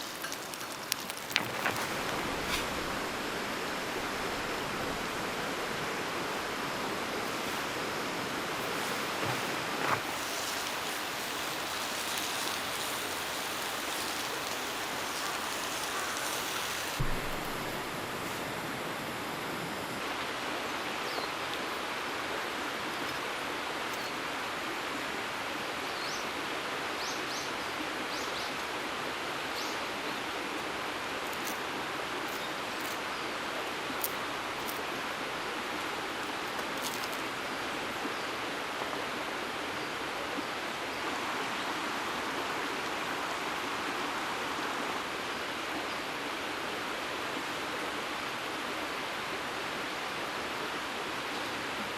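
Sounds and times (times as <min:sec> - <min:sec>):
steady rushing outdoor noise: 0:00.0 - 0:51.9.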